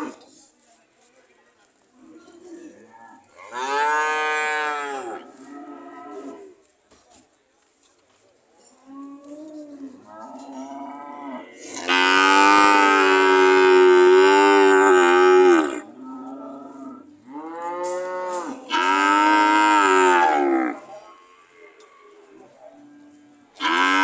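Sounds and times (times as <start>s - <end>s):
cattle mooing: 10.3s - 16.5s.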